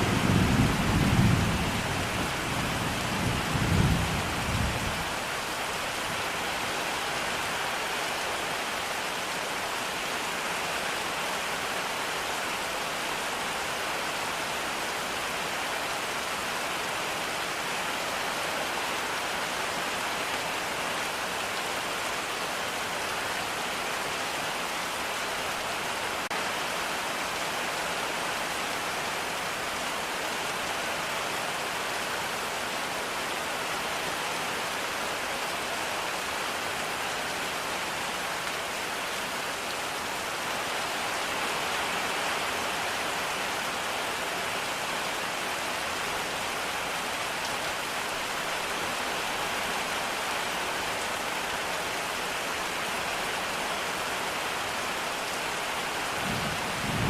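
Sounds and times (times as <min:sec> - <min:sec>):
heavy rain: 0:00.0 - 0:57.0
low thunder rumble: 0:56.2 - 0:57.0.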